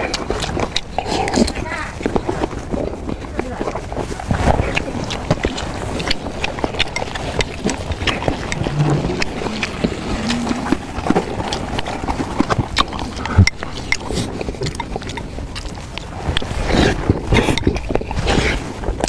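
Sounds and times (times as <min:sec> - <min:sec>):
chewing and mouth smacks: 0:00.0 - 0:19.0
short low hums: 0:08.4 - 0:12.1.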